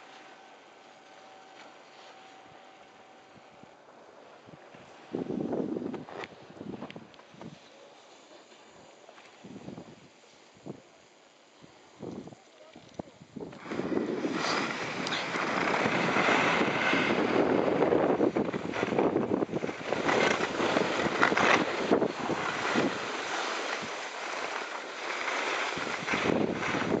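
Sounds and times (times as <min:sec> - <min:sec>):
wind rushing over microphone: 0:04.4 - 0:07.6, 0:12.0 - 0:24.4, 0:25.6 - 0:27.0.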